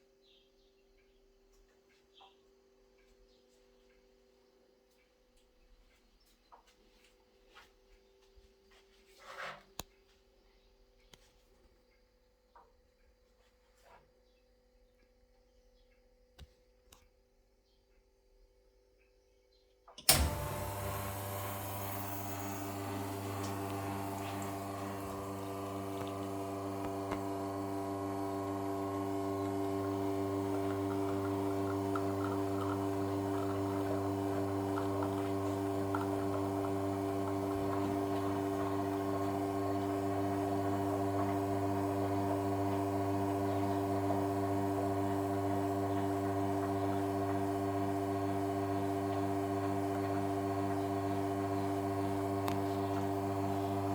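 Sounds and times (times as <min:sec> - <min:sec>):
espresso machine pump humming: 0:20.0 - 0:53.9.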